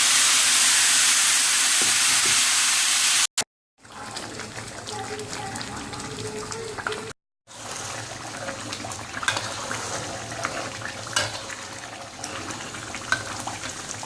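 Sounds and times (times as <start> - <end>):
paste sizzling in oil: 0.0 - 3.4, 7.5 - 14.0.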